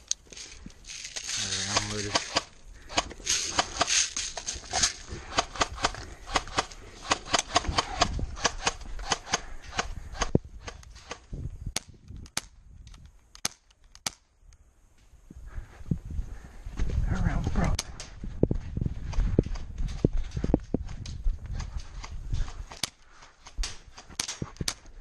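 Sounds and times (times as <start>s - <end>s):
airsoft guns firing: 1.6s - 4.1s.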